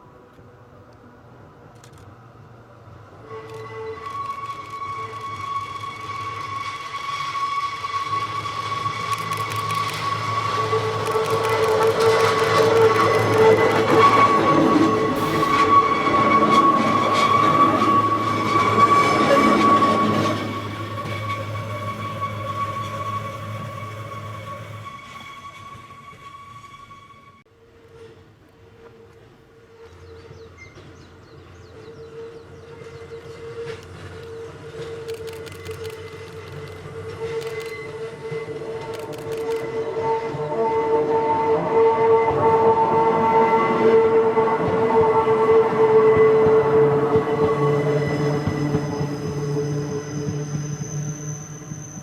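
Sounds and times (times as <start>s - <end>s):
rail noise: 0.0s - 52.0s
railcar motor whine: 0.0s - 52.0s
wheels clicking on track: 3.4s - 26.7s, 28.8s - 40.3s.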